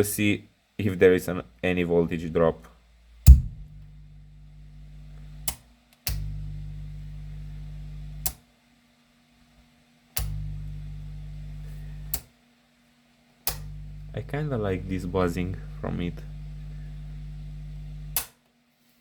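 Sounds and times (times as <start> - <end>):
amplifier mains buzz: 2.2 - 8.4, 10.2 - 12.3, 13.4 - 18.3
amplifier switch clicking: 3.3 - 3.8, 5.4 - 6.4, 10.2 - 10.5, 13.5 - 13.8.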